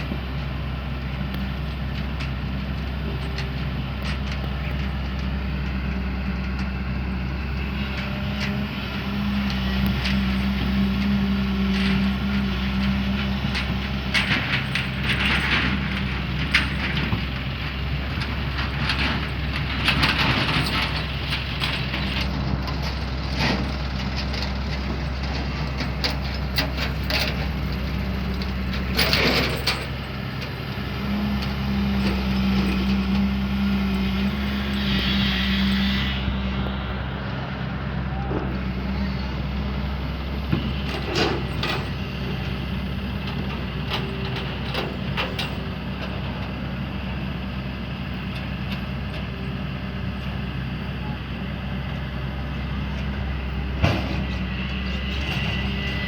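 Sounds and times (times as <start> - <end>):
excavator diesel engine running: 0.0 - 56.0
knocks and clatter: 9.5 - 30.6.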